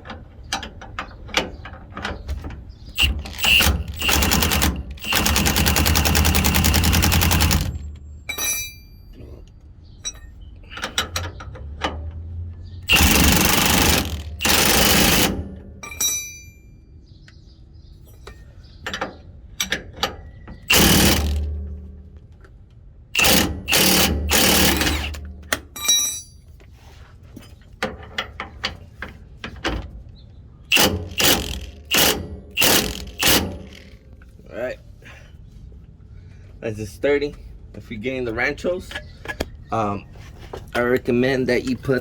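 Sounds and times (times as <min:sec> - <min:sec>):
impact wrench hammering: 0:03.0 - 0:08.9, 0:12.9 - 0:16.5, 0:20.7 - 0:21.6, 0:23.2 - 0:26.3, 0:30.7 - 0:34.0
tool clicks and clatter: 0:03.0 - 0:08.9, 0:12.9 - 0:16.5, 0:20.7 - 0:21.6, 0:23.2 - 0:26.5, 0:30.7 - 0:34.3.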